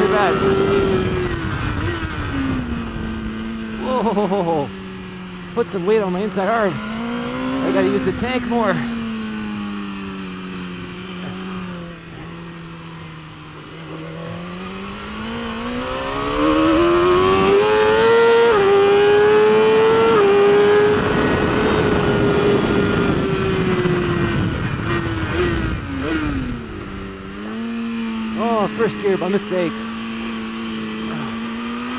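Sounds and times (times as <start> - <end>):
motorcycle engine revving: 0.0 - 31.9
gear upshifts: 10.6 - 26.6
wind rush: 13.7 - 27.0.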